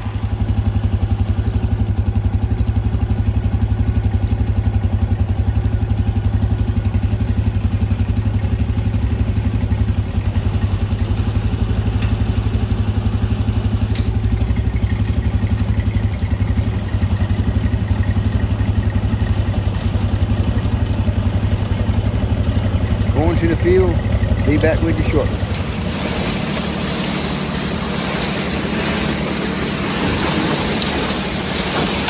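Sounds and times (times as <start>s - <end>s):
tractor engine running: 0.0s - 32.0s
machinery clatter: 13.7s - 32.0s.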